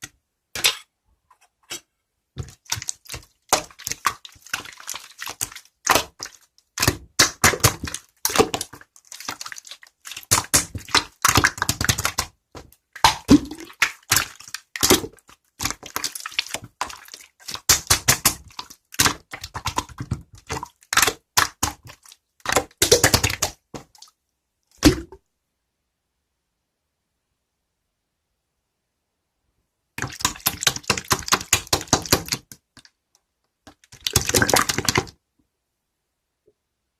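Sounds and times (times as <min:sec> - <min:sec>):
slime clicking and popping: 0:02.4 - 0:24.0, 0:30.0 - 0:32.6, 0:33.7 - 0:35.2.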